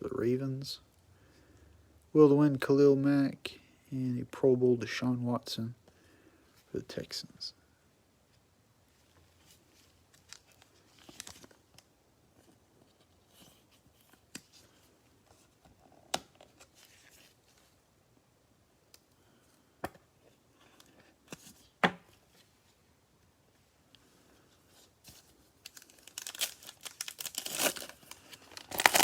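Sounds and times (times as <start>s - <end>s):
cards and foil wrapper crinkling: 9.5s - 11.9s, 25.1s - 29.0s.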